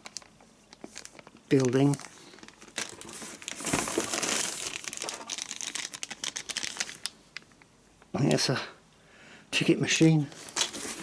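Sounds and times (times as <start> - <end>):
plastic packaging crinkling: 0.0 - 7.7, 10.3 - 11.0.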